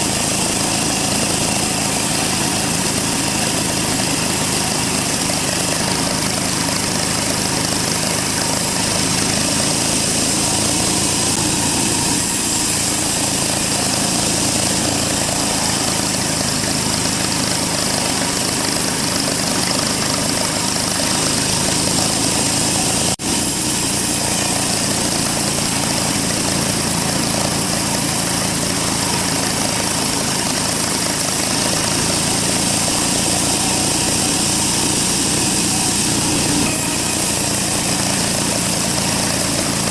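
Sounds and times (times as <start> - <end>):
band saw running: 0.0 - 39.9.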